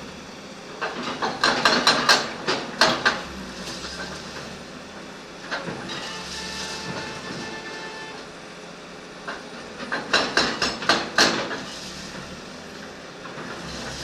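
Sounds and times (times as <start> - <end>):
backhoe diesel engine running: 0.0 - 14.0.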